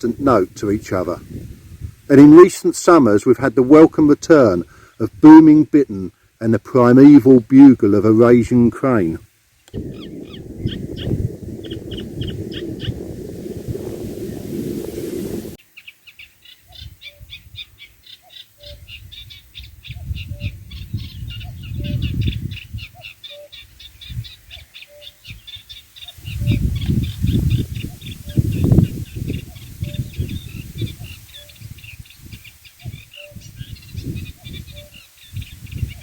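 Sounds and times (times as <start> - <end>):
reed warbler chattering song: 9.6 - 36.0
low rumbles: 9.7 - 15.6
cuckoo calling: 16.2 - 36.0.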